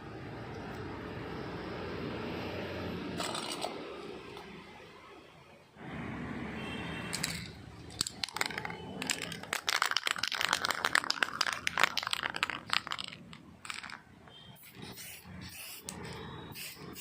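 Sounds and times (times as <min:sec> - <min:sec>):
clicks and scrapes of tools: 0:03.2 - 0:03.8.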